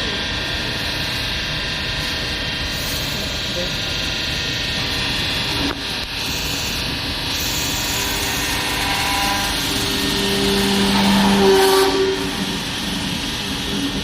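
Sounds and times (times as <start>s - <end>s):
hydraulic pump and motor running: 0.0s - 14.0s
humming tone: 4.1s - 14.0s.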